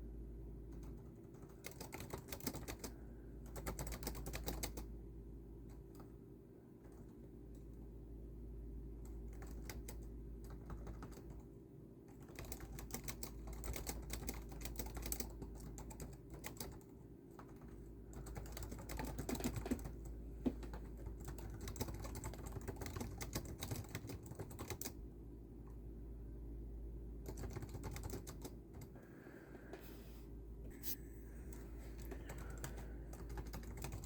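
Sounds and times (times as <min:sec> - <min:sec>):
steady low hum: 0:00.0 - 0:34.0
computer keyboard typing: 0:00.7 - 0:04.9, 0:09.0 - 0:25.0, 0:27.2 - 0:29.0, 0:31.5 - 0:34.0.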